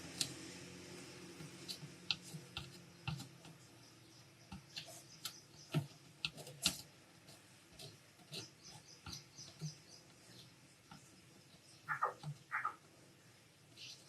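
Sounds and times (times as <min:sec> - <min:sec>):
small tools clicking and tapping: 0:01.3 - 0:12.4.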